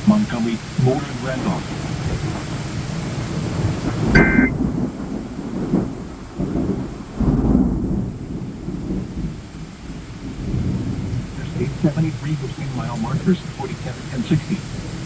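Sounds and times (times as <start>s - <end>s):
rain falling: 0.0s - 15.0s
thunder rumbling: 1.7s - 14.2s.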